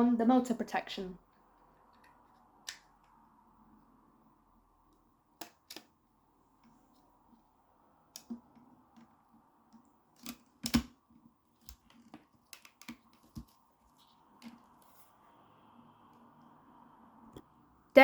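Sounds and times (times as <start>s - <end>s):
plastic parts clicking and knocking: 9.7s - 13.6s.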